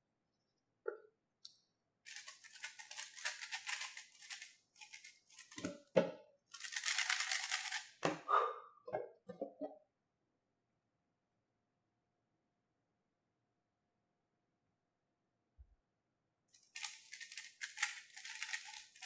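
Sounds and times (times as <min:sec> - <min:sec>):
puzzle cube rattling clicks: 0:02.1 - 0:05.7, 0:06.6 - 0:08.0, 0:16.6 - 0:19.0.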